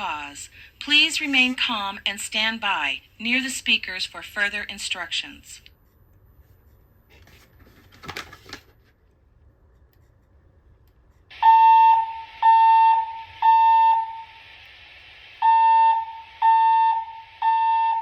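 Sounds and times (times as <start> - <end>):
fire alarm beeping tone: 11.3 - 14.6, 15.2 - 18.0.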